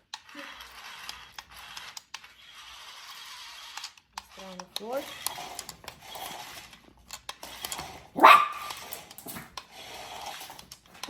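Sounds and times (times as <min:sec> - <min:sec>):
faint clicks and scuffling: 0:00.0 - 0:11.0
dog barking sharply: 0:08.1 - 0:09.4.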